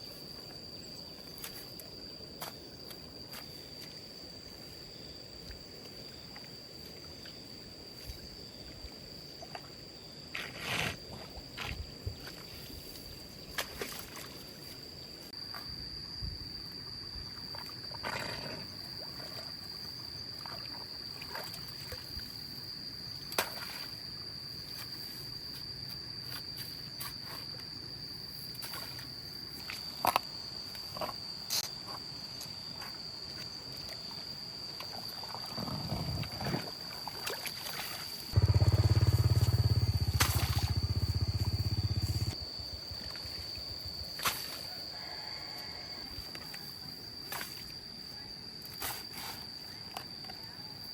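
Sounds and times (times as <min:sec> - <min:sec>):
high-pitched insect buzz: 0:35.6 - 0:50.9
loud low steady sound: 0:38.4 - 0:42.4.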